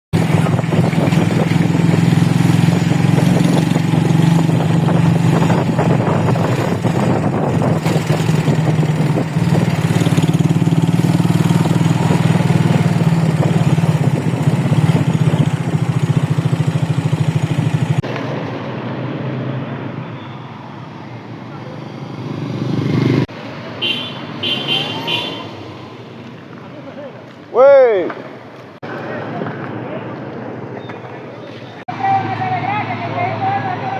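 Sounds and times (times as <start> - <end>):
vehicle engine running: 0.1 - 18.2.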